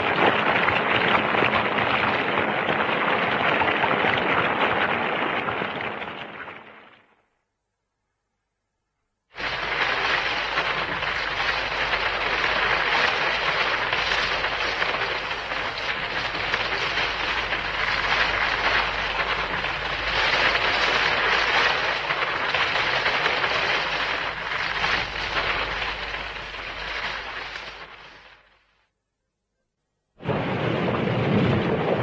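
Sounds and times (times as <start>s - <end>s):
low hum: 9.0s - 32.0s.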